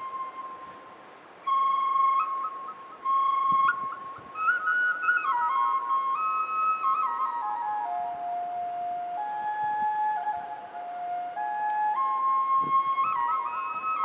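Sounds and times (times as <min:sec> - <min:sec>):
flute playing slow melody: 0:00.0 - 0:14.0.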